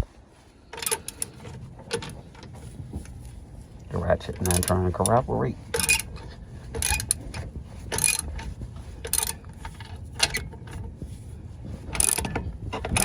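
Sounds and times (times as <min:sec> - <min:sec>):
hand ratchet clicking: 0:04.4 - 0:05.2.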